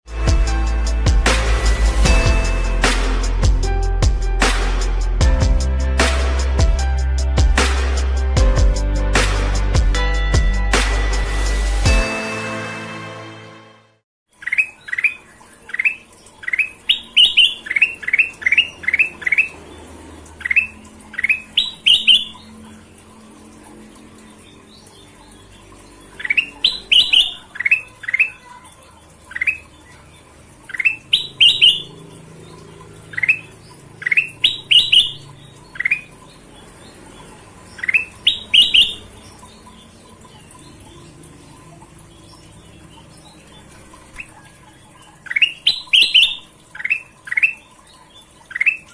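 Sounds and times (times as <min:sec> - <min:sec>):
bird whistling song: 0:14.4 - 0:19.5, 0:20.4 - 0:22.5, 0:26.2 - 0:28.4, 0:30.7 - 0:32.0, 0:33.2 - 0:36.1, 0:37.8 - 0:39.8, 0:45.2 - 0:48.9.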